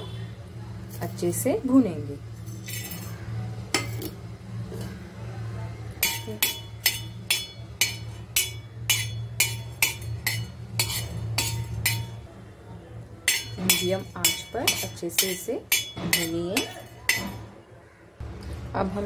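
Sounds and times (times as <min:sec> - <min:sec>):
spoon clinking against a pan: 0:06.0 - 0:12.3, 0:13.2 - 0:17.5.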